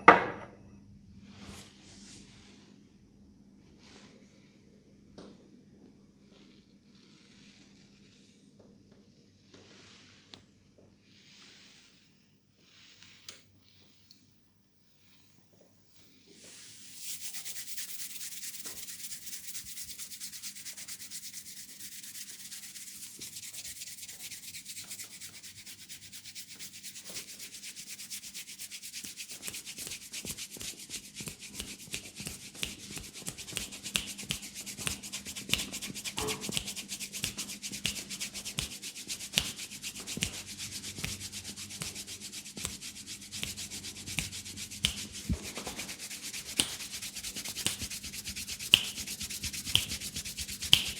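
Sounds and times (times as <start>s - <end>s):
fingertips scratching hair: 16.4s - 50.9s.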